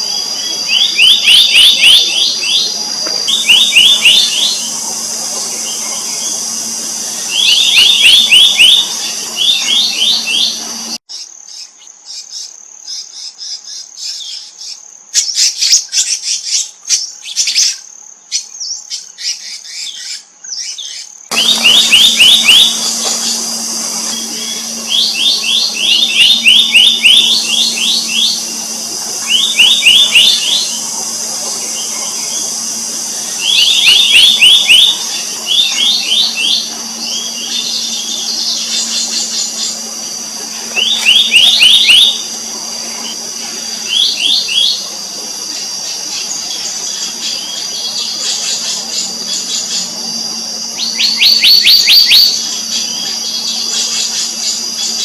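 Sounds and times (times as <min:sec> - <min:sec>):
bird ringing repeated notes: 0:00.0 - 0:11.0, 0:21.3 - 0:45.3
high insect drone: 0:00.0 - 0:15.2, 0:21.2 - 0:55.0
scratchy chirps: 0:21.3 - 0:45.0.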